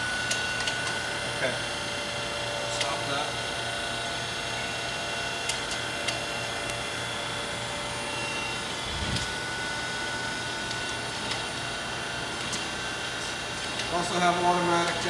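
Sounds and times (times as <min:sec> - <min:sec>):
surface grinder motor whine: 0:05.8 - 0:12.2.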